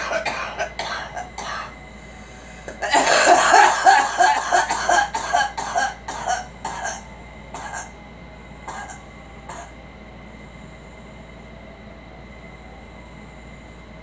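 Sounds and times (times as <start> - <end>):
girl coughing: 0.0 - 1.7, 2.7 - 7.0, 7.6 - 7.9, 8.7 - 9.7.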